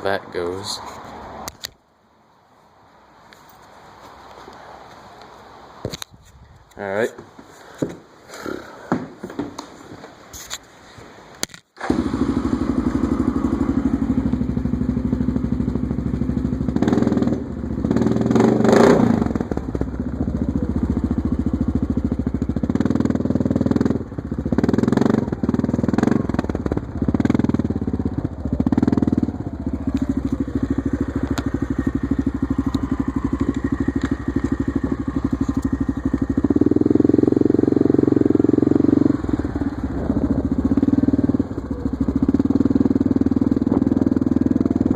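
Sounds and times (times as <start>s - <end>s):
loud atv engine running: 11.8s - 44.9s.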